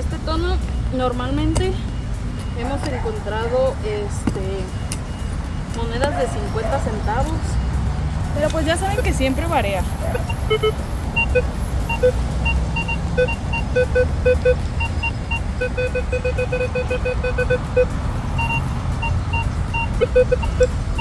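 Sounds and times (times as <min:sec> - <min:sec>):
metal detector beeps: 0:08.4 - 0:21.0.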